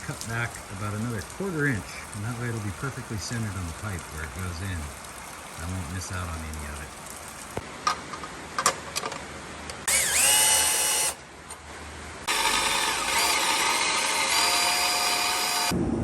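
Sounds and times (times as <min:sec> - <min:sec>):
power drill motor whining: 0:09.9 - 0:11.2, 0:12.3 - 0:15.7.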